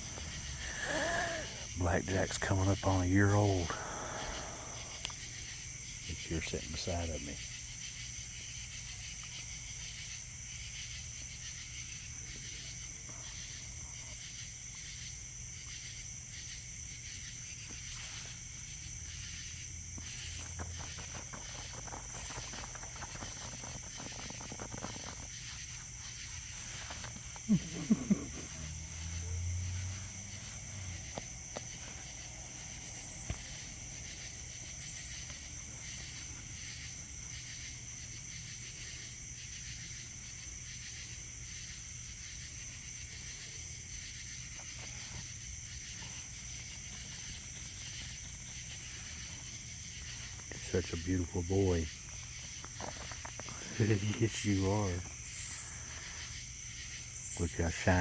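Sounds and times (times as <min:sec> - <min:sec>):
insects chirring: 0:00.0 - 0:58.0.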